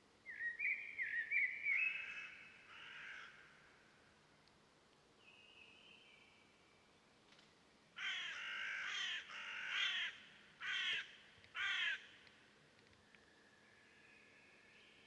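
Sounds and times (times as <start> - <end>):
bird calling: 0.3 - 3.4.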